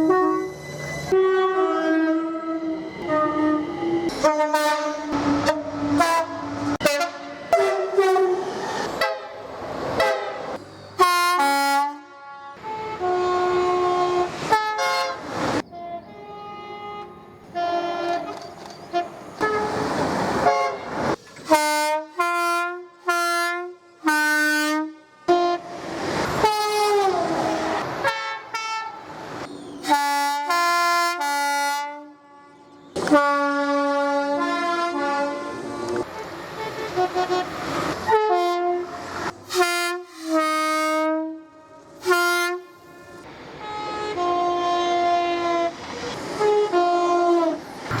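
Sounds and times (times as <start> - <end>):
train air horn blasts: 0.0 - 25.8, 26.4 - 29.1, 29.8 - 48.0
rushing noise: 47.6 - 48.0.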